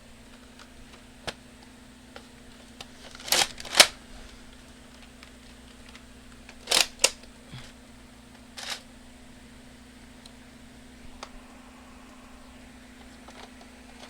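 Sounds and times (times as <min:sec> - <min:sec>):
toy blaster reloading clicks: 0:03.0 - 0:03.9, 0:06.5 - 0:07.3, 0:08.6 - 0:08.8.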